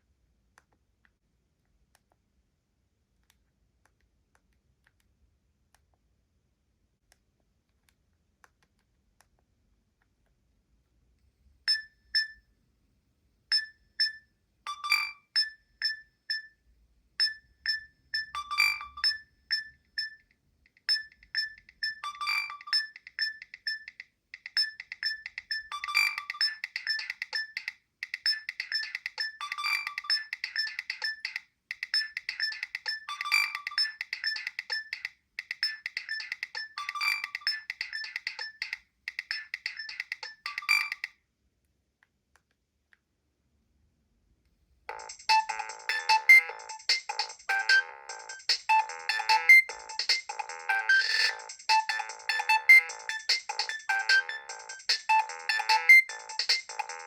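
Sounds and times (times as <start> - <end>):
polyphonic phone ringtone: 17.2 - 20.3, 20.9 - 41.1, 44.9 - 57.0.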